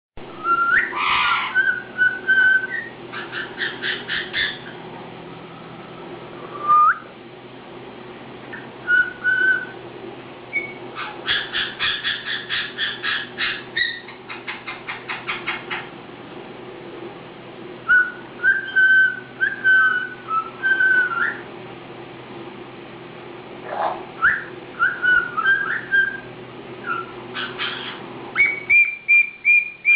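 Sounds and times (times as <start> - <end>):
parrot whistling: 0.3 - 7.1, 8.5 - 9.8, 10.5 - 15.9, 17.9 - 21.4, 23.7 - 29.9.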